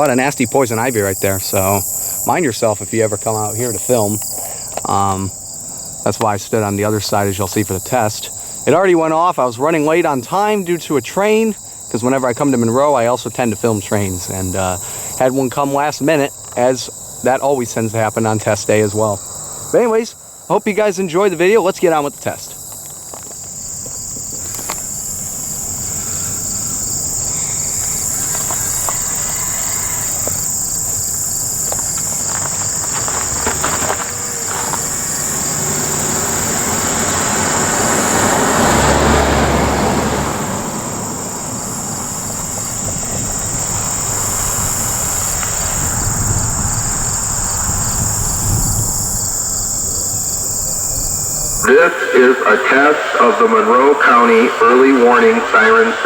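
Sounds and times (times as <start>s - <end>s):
high-pitched insect chorus: 0.0s - 56.0s
vehicle passing: 24.5s - 56.0s.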